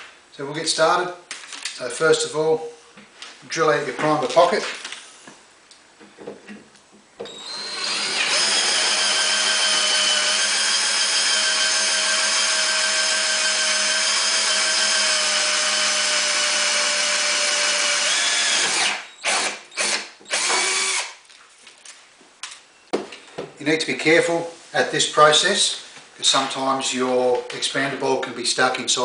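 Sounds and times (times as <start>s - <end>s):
electric drill running: 7.3s - 21.2s.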